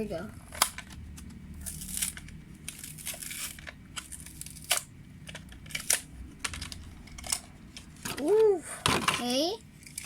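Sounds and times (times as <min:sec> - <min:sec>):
plastic packaging clicks and crinkles: 0:00.4 - 0:08.4.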